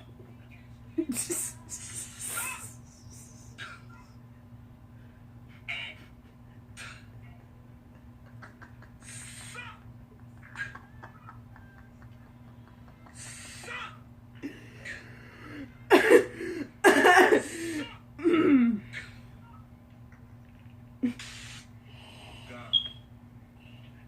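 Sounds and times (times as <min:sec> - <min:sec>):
man laughing in wheezing bursts: 0:08.0 - 0:11.9, 0:12.6 - 0:13.8.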